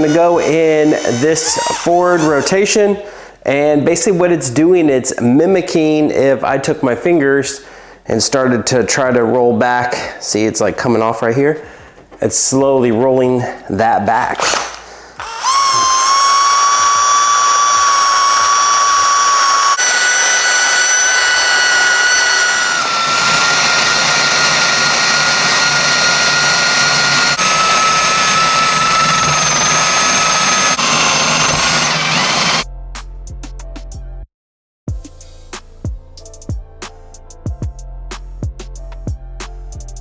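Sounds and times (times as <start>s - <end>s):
drill motor whine: 0.0s - 2.5s, 14.4s - 32.6s
eraser wheel scrubbing: 15.2s - 32.6s
music with drum beat: 34.9s - 40.0s.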